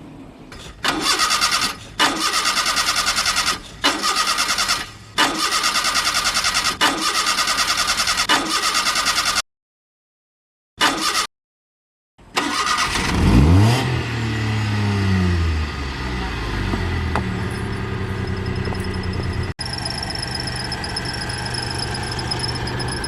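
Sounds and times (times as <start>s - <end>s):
car engine starting and idling: 12.4s - 23.0s.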